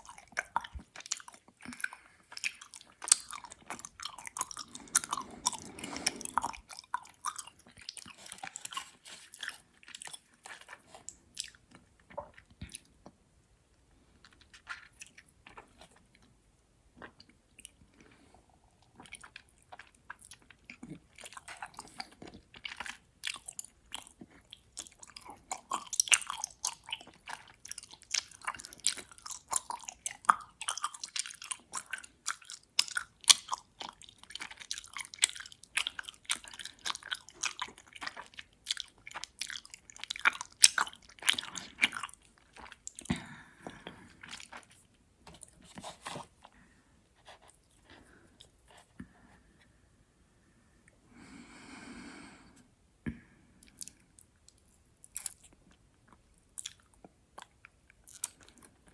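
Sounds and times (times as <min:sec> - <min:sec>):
wet sticky chewing: 0:00.0 - 0:13.2, 0:18.8 - 0:46.6.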